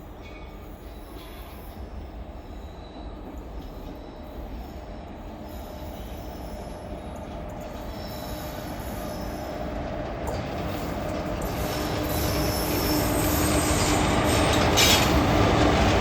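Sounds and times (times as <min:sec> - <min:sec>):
electric goods train running: 0:00.0 - 0:16.0.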